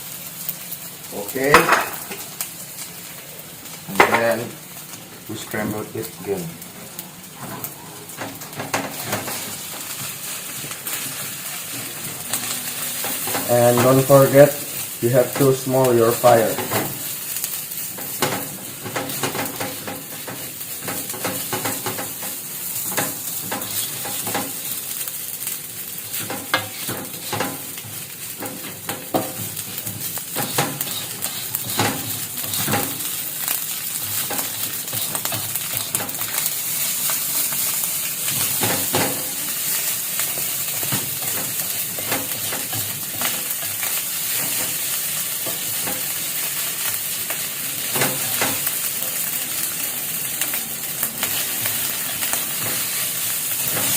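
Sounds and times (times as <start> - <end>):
fried rice sizzling in a pan: 0.0 - 53.9
utensil scraping and clicking on pan: 18.0 - 24.6, 26.1 - 39.4, 53.6 - 53.9.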